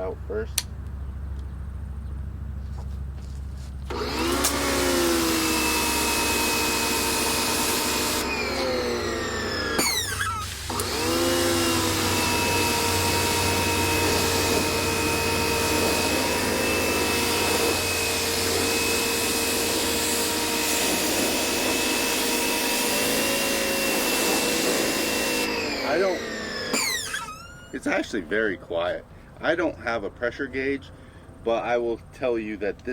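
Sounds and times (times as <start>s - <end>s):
pressure washer motor whining: 3.8s - 28.3s
water spraying hiss: 9.9s - 17.0s.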